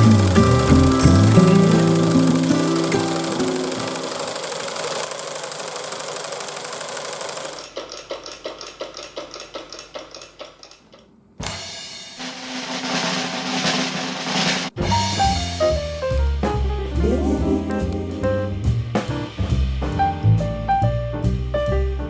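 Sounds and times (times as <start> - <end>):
music with drum kit: 0.0 - 4.4, 11.4 - 22.0
fast mechanical clatter: 0.0 - 10.7
slow regular knocks: 7.6 - 11.1.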